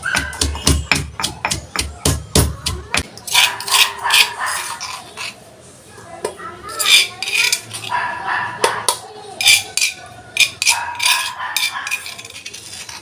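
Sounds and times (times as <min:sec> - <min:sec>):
stone pestle pounding in mortar: 0:00.0 - 0:04.3.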